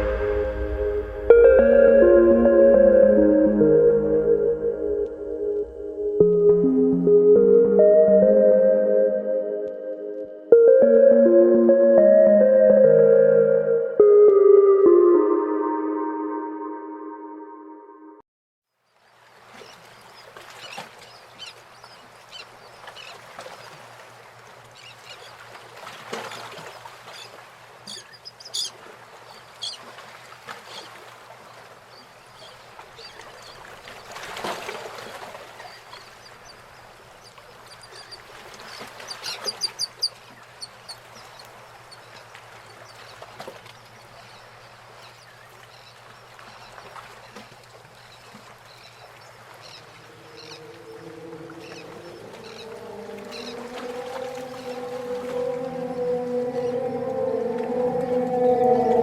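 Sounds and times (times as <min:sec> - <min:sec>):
birds calling: 0:48.7 - 0:59.0.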